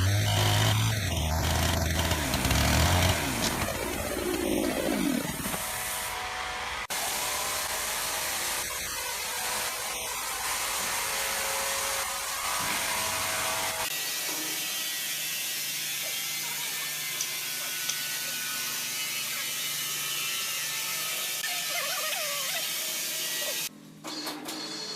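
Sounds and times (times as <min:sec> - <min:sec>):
machinery running: 0:00.0 - 0:06.6.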